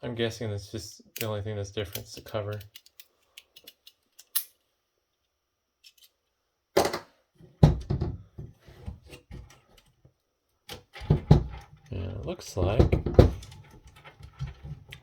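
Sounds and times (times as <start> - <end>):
clicks and knocks of components: 1.2 - 4.6, 5.8 - 7.1.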